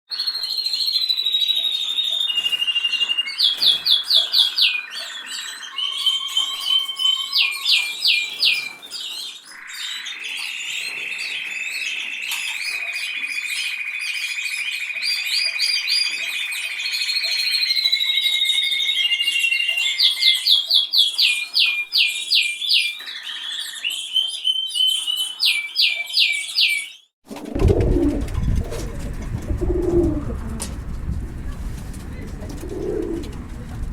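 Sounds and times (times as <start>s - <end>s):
canary singing: 0.1s - 27.1s
pigeon cooing: 27.3s - 33.9s.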